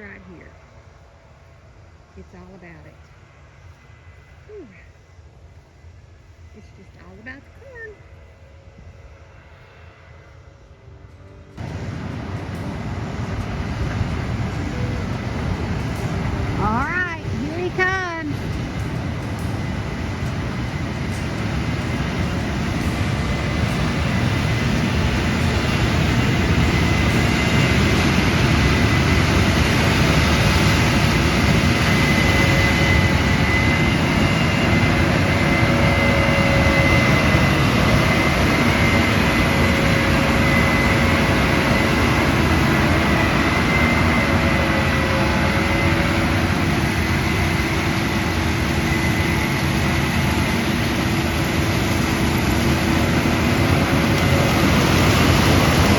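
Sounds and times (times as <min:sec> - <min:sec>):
combine harvester working: 0:00.0 - 0:55.9.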